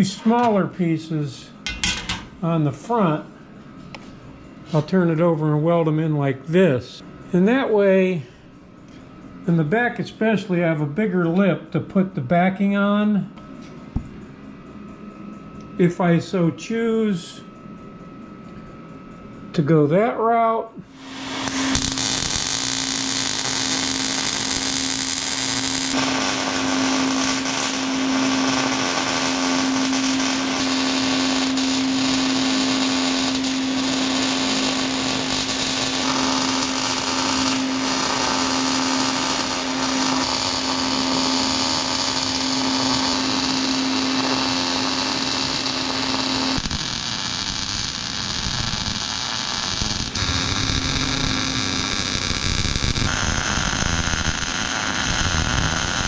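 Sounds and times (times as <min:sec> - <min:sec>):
even hiss: 0:20.9 - 0:51.9
angle grinder on steel: 0:21.0 - 0:48.5, 0:49.2 - 0:56.0.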